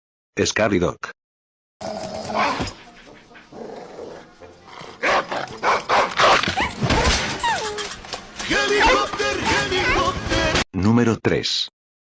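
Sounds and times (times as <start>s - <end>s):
music: 2.2s - 10.7s
dog barking: 5.0s - 6.8s.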